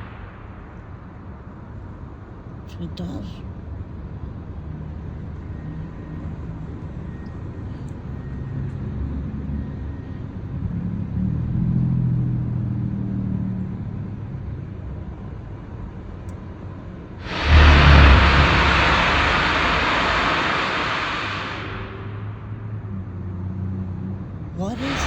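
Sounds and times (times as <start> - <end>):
sudden loud roar: 17.2 - 22.8, 24.7 - 25.0
low engine-like rumble: 17.2 - 23.5, 24.6 - 25.0.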